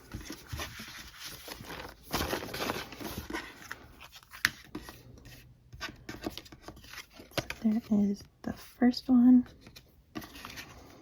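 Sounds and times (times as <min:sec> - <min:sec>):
packaging rustling and tearing: 0:00.0 - 0:04.3.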